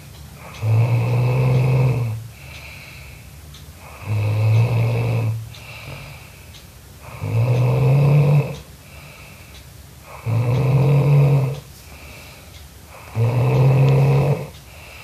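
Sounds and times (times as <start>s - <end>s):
quiet breathing: 0.0s - 15.0s
person snoring loudly: 0.4s - 2.5s, 3.8s - 6.3s, 7.0s - 9.3s, 10.0s - 12.3s, 12.9s - 15.0s.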